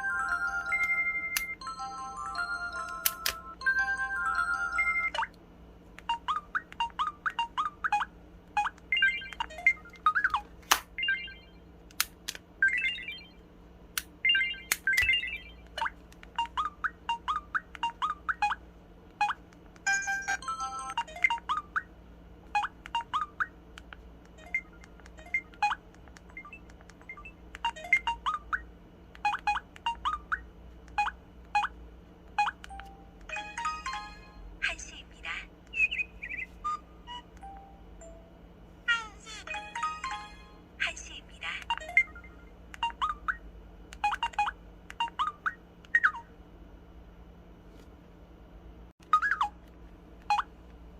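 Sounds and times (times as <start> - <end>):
phone electronic beeps and jingles: 11.0 - 11.6, 12.6 - 13.4, 14.2 - 15.6.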